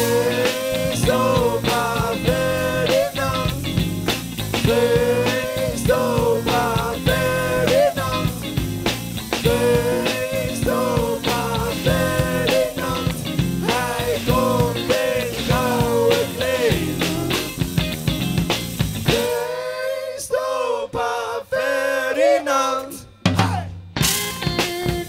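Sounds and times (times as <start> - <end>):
drum beat: 0.0 - 19.3
bass: 0.0 - 19.5, 23.3 - 25.0.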